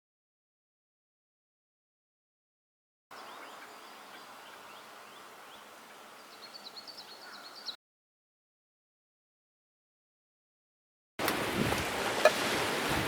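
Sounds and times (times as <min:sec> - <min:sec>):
small birds chirping: 0:03.1 - 0:07.8.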